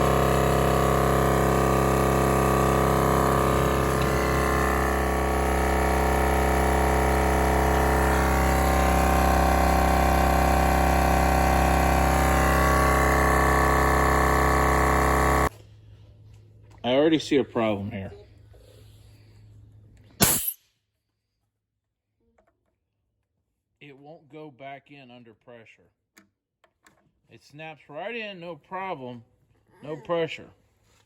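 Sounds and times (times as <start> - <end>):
air compressor running: 0.0 - 15.5.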